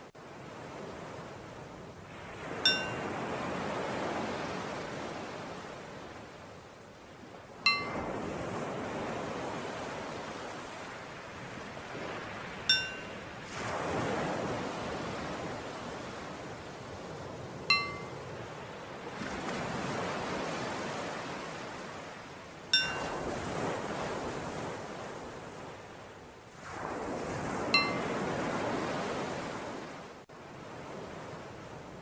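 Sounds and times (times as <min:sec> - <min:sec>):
ocean waves surging: 0:02.2 - 0:05.9, 0:07.7 - 0:25.6
bell ringing: 0:02.6 - 0:03.0, 0:07.7 - 0:08.1, 0:12.7 - 0:13.2, 0:17.7 - 0:18.2, 0:22.8 - 0:23.1, 0:27.8 - 0:28.0.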